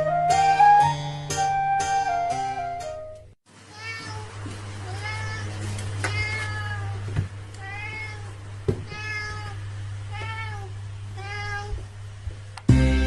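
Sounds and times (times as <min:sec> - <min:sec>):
cat meowing: 0:03.7 - 0:11.9.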